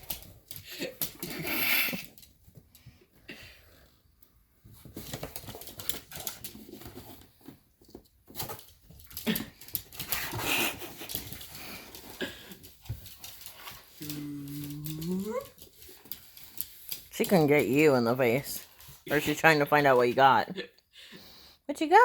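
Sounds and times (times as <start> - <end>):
pets scratching and rustling: 0.0 - 20.4.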